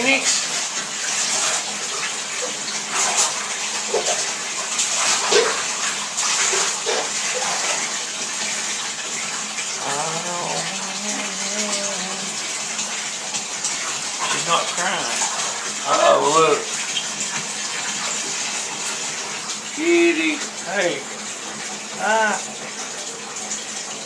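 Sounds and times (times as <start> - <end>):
tap water running into bathtub: 0.0 - 24.0.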